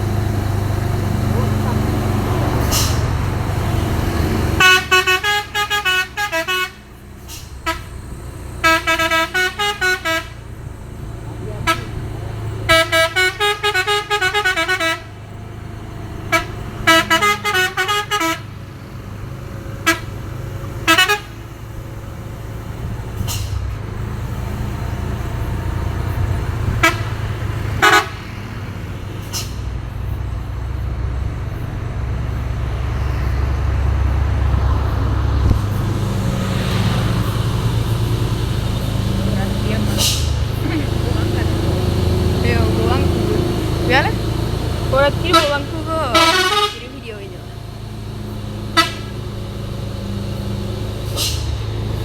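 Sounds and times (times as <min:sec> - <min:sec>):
heavy vehicle engine rumble: 0:00.0 - 0:52.0
musical horns warbling: 0:04.2 - 0:07.0, 0:08.6 - 0:10.6, 0:11.5 - 0:15.1, 0:16.3 - 0:18.6, 0:26.1 - 0:28.5, 0:37.9 - 0:47.4, 0:48.7 - 0:49.2
short horn blasts: 0:04.6 - 0:08.0, 0:08.6 - 0:10.5, 0:11.6 - 0:15.1, 0:16.3 - 0:18.5, 0:19.8 - 0:21.4, 0:26.7 - 0:28.3, 0:44.9 - 0:47.3, 0:48.7 - 0:49.2.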